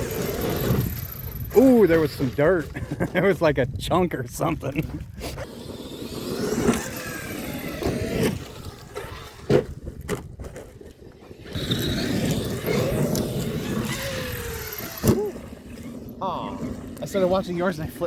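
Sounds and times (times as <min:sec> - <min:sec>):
electric motors whining: 0:00.0 - 0:02.2, 0:05.3 - 0:09.8, 0:11.2 - 0:17.5.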